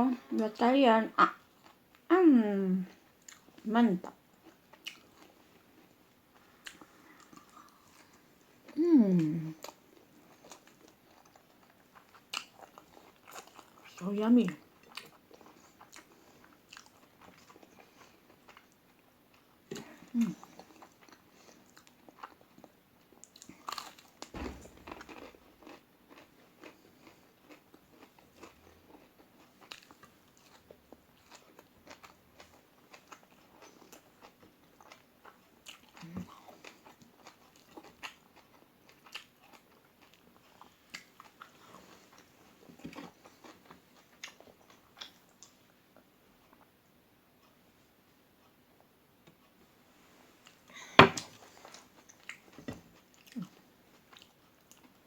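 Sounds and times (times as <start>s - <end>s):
crunchy chewing: 9.6s - 45.6s, 51.2s - 55.0s.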